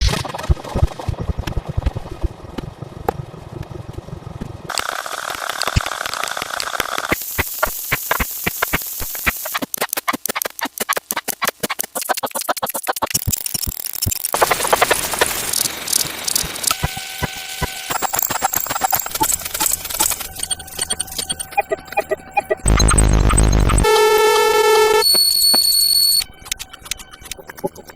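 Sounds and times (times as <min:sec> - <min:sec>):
fast sharp clicks: 0:04.7 - 0:17.0, 0:17.6 - 0:23.9, 0:25.0 - 0:27.9
sound effects: 0:07.0 - 0:27.9.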